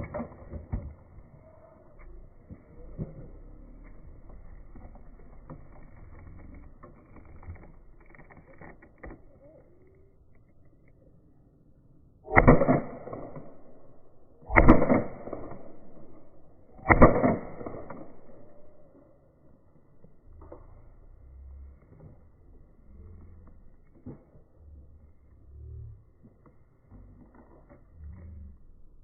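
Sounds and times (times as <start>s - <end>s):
sharp gun reports: 12.3s - 18.8s.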